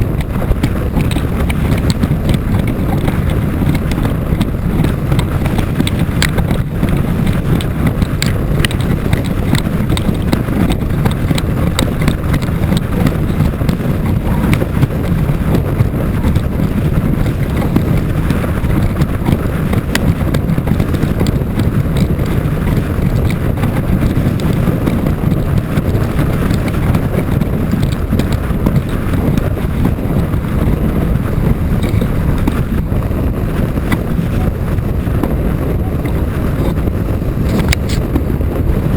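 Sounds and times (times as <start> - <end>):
water rushing under board: 0.0 - 38.9
wind buffeting microphone: 0.0 - 38.9
light ticks: 0.1 - 30.3, 31.8 - 32.6.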